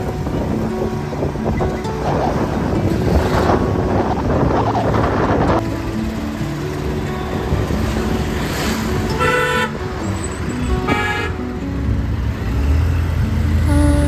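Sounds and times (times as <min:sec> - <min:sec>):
background music: 0:00.0 - 0:14.0
street noise: 0:00.0 - 0:14.0
vehicle horn honks: 0:09.1 - 0:09.8, 0:10.8 - 0:11.5.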